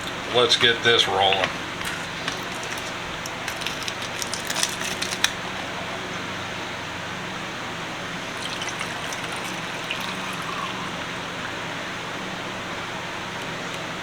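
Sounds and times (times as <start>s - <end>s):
liquid pouring into glass jar: 1.3s - 5.3s, 8.1s - 12.2s.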